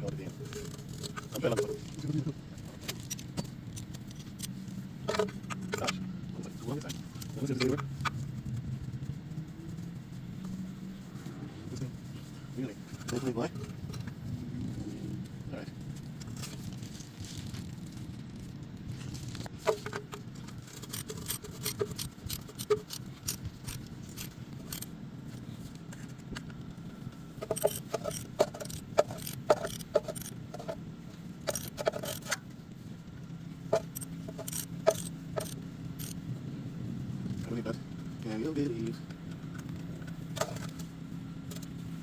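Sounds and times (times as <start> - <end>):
steady low hum: 0.0 - 42.0
metal tools clinking and scraping: 20.7 - 24.8, 27.4 - 30.3, 31.5 - 32.4, 33.8 - 36.1.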